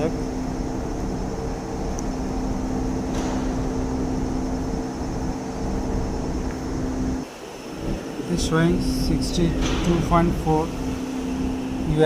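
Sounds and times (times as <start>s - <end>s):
low rumble: 0.0s - 7.2s
machine hum: 0.0s - 12.0s.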